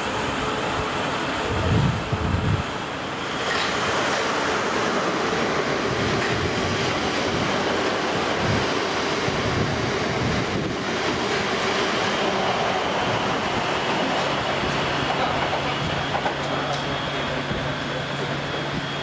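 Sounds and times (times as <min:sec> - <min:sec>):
train passing: 0:00.0 - 0:19.0
wind buffeting microphone: 0:01.4 - 0:02.8, 0:05.7 - 0:16.2.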